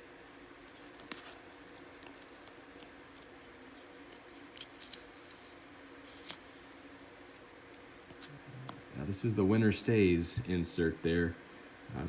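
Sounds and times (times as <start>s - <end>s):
low steady hiss: 0.0s - 12.0s.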